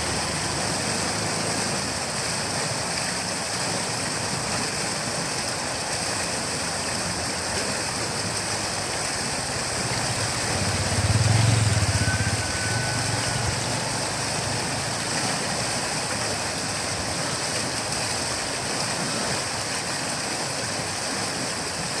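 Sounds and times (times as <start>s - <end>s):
low engine hum: 0.0s - 2.6s, 7.0s - 18.7s
river water rushing: 0.0s - 22.0s.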